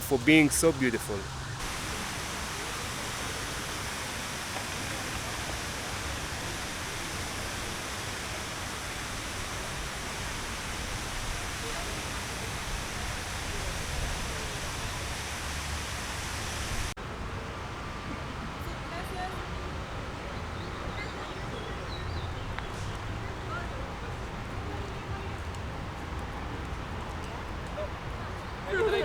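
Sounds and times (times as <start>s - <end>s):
falling water rushing: 0.0s - 17.0s.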